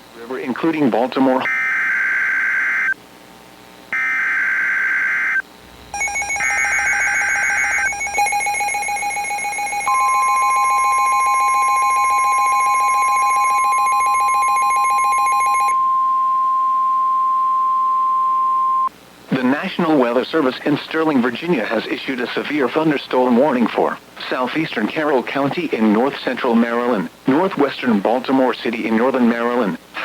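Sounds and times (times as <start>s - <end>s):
steady warning tone: 4.0s - 18.9s
warbling data bursts: 6.0s - 15.7s
pulsing two-tone alert signal: 6.0s - 15.9s.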